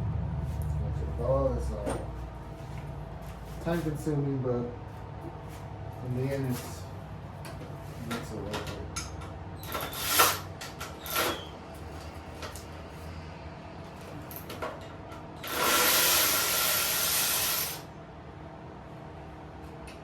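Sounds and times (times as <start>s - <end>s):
handheld power tool running: 9.6s - 10.4s, 15.4s - 17.9s.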